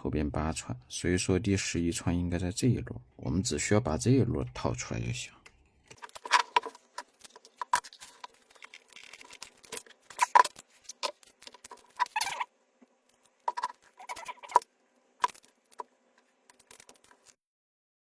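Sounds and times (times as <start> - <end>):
tools clicking and scraping: 5.9 - 12.5, 15.2 - 17.4.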